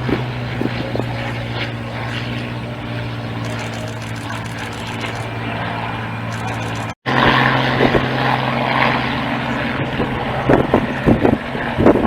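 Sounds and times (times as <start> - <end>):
propeller aircraft droning: 0.0 - 12.0.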